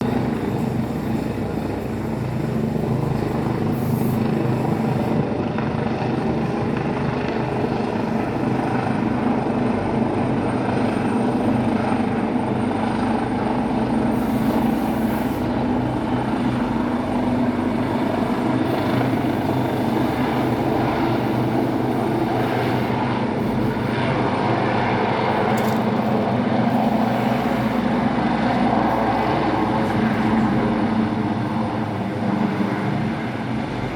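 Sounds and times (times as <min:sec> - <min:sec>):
helicopter rotor and engine: 0:00.0 - 0:33.9.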